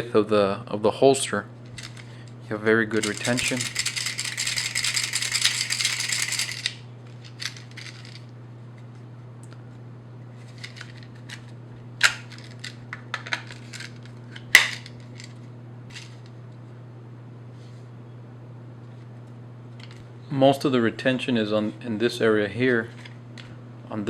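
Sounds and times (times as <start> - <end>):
low electrical hum: 0.0 - 24.0
handcuffs rattling: 1.8 - 2.0, 3.0 - 8.2.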